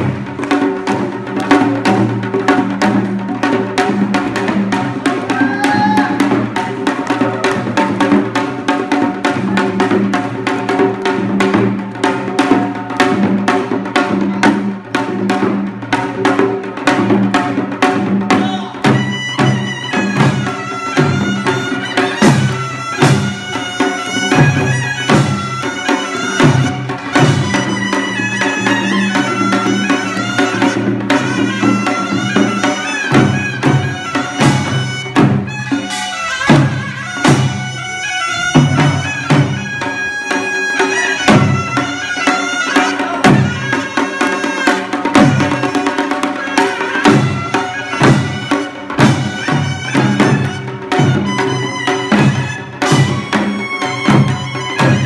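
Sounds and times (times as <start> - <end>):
fast steady drumming: 0.0 - 55.0
double-reed wind instrument melody: 18.8 - 55.0.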